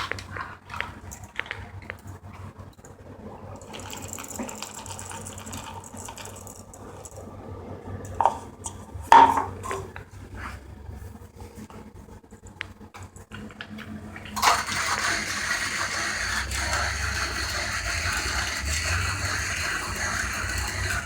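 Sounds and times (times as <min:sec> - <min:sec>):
coffee grinder rattling and crunching: 0:03.6 - 0:07.1, 0:14.4 - 0:21.0.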